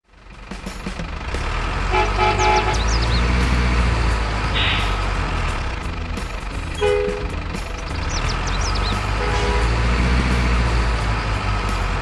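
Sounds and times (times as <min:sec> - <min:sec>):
truck engine rumble: 0:00.1 - 0:12.0
truck horn toot: 0:01.8 - 0:05.0, 0:06.7 - 0:07.5, 0:08.4 - 0:12.0.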